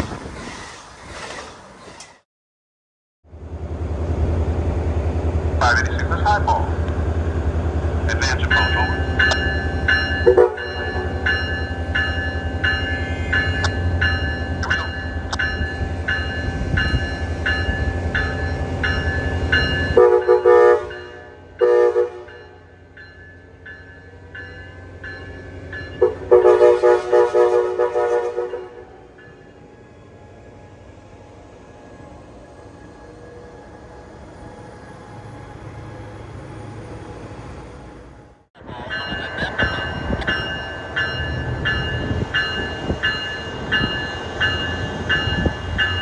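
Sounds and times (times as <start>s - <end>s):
train rumbling past: 0.0s - 2.2s, 3.3s - 46.0s
warning bell ringing: 8.1s - 21.2s, 38.9s - 46.0s
locomotive horn blasts: 10.2s - 11.3s, 19.8s - 22.5s, 26.0s - 29.1s.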